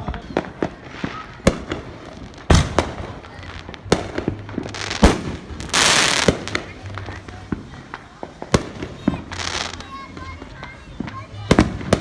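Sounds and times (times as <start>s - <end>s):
fireworks banging: 0.0s - 12.0s.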